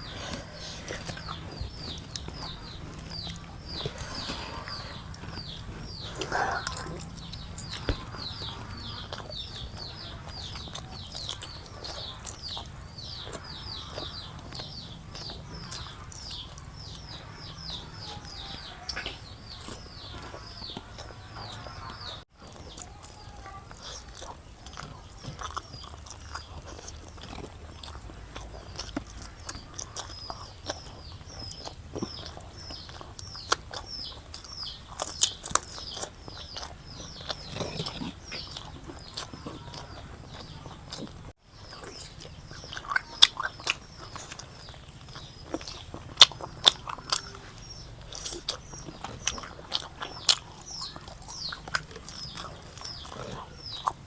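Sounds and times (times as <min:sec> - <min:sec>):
bird chirping rapidly: 0:00.0 - 0:26.6, 0:41.5 - 0:54.0
person chewing food: 0:00.0 - 0:54.0.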